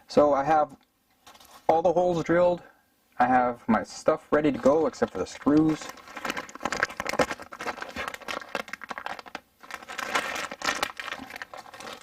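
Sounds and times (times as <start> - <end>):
packaging crinkling: 4.5 - 12.0.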